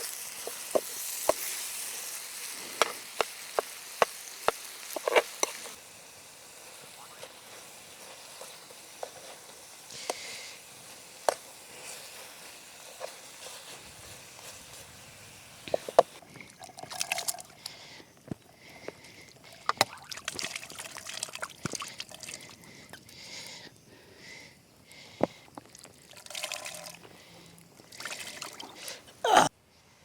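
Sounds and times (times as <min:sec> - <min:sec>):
water trickling and sloshing: 0:27.8 - 0:29.0.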